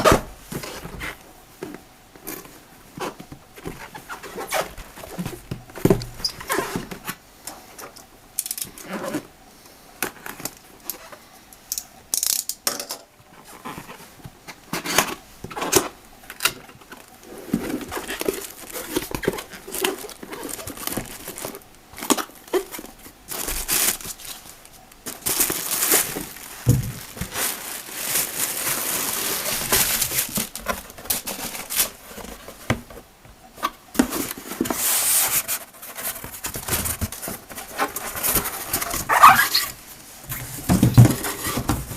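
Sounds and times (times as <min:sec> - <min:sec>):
packaging crinkling and rustling: 0:14.7 - 0:41.9.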